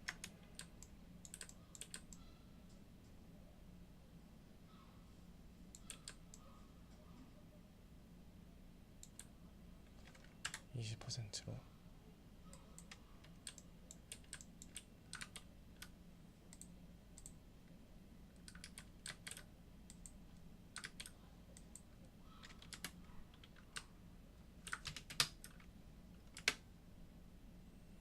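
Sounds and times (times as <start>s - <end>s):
keyboard keystrokes: 0.0s - 2.2s, 18.4s - 20.1s
faint low hum: 0.0s - 28.0s.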